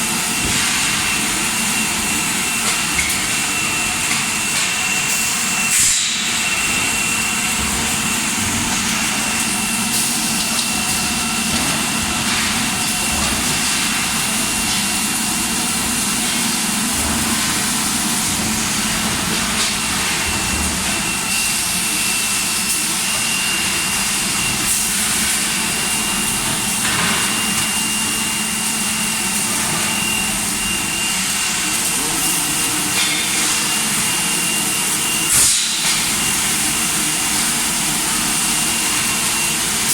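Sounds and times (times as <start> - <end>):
factory machinery hiss: 0.0 - 39.9.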